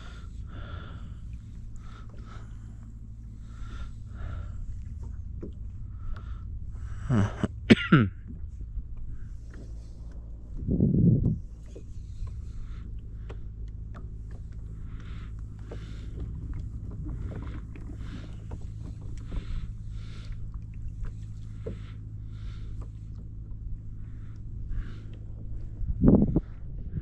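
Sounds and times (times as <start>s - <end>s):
steady low rumble: 0.0s - 27.0s
water lapping against hull: 0.0s - 27.0s.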